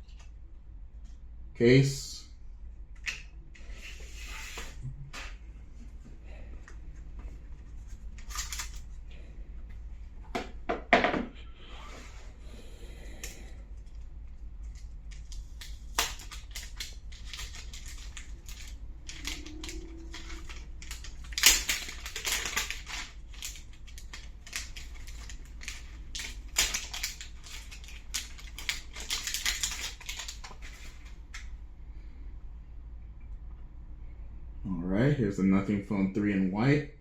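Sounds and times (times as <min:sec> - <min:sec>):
low steady hum: 0:00.0 - 0:37.0
packaging crinkling and clicks: 0:08.2 - 0:08.9, 0:14.6 - 0:31.5.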